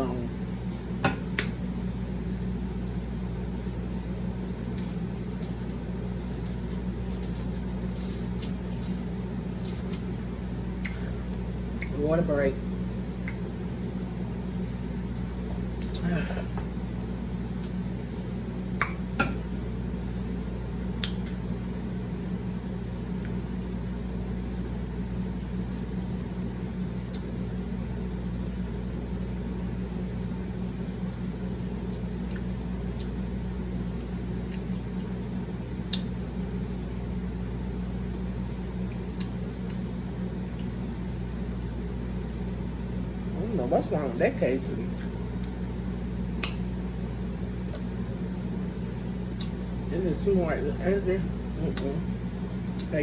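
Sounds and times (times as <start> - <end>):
steady low hum: 0.0 - 53.0
eating clicks and smacks: 10.8 - 11.1, 13.2 - 13.5, 20.8 - 21.4, 31.8 - 33.4, 35.8 - 36.2, 38.9 - 39.9, 45.0 - 45.6, 46.3 - 46.7, 49.3 - 49.7, 52.6 - 52.9.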